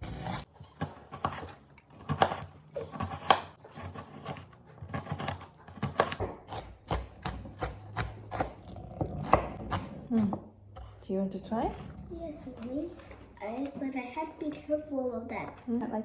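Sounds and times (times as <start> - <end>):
knife chopping onion on board: 0.0 - 10.5.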